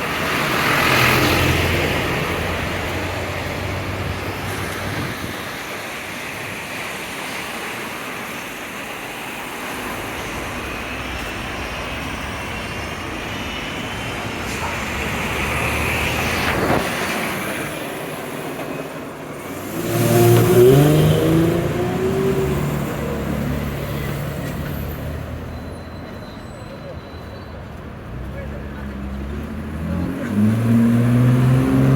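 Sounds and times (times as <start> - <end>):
passing cars hum: 0.0 - 31.9
engine accelerating: 19.5 - 24.5, 28.9 - 31.9.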